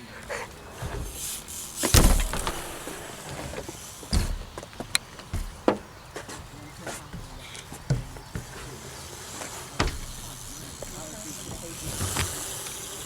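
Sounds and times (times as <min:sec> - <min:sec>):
skateboard wheels rolling: 0:00.0 - 0:13.0
skateboard landing thud: 0:00.8 - 0:05.9, 0:09.8 - 0:12.8.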